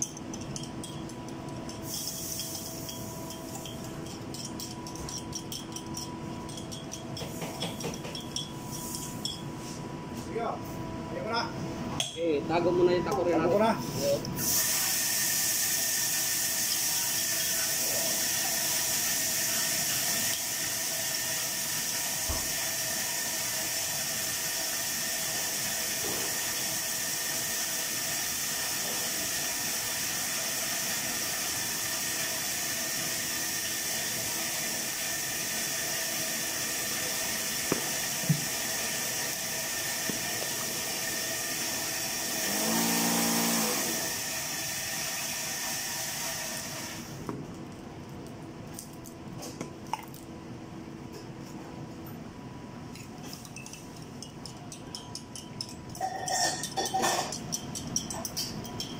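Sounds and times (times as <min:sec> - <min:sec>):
chicken hissing in pan: 0:14.4 - 0:29.4.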